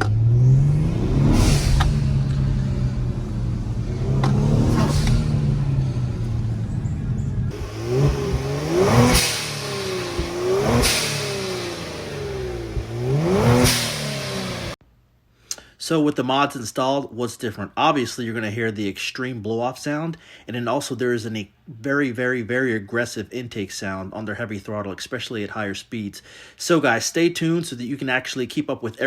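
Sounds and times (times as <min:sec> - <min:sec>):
car engine revving: 0:00.0 - 0:14.8
blow-off valves venting whoosh: 0:00.3 - 0:14.8.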